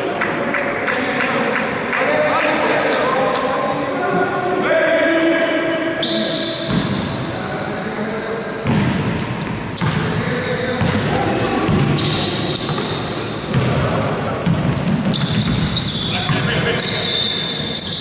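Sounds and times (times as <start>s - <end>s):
players' voices echoing: 0.0s - 18.0s
sneakers squeaking: 6.0s - 7.3s, 8.6s - 18.0s
basketball bouncing on court: 8.6s - 10.2s, 10.8s - 16.5s.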